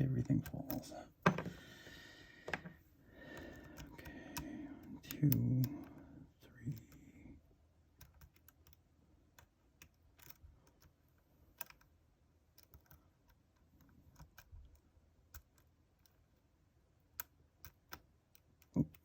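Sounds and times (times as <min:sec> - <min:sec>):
lock pick clicking: 0:08.0 - 0:11.9.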